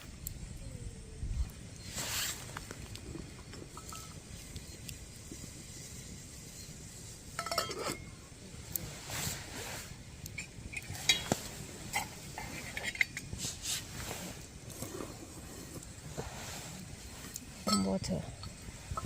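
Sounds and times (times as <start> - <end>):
metal cookware clinking: 7.4 - 8.1.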